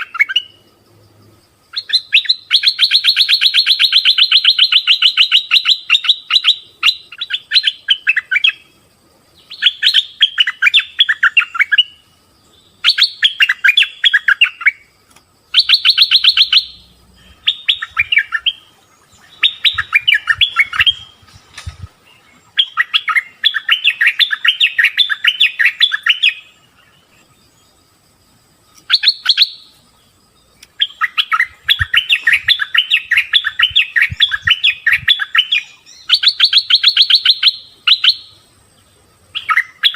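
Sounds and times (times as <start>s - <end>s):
bird rapid chattering calls: 15.6s - 26.5s, 30.7s - 38.2s.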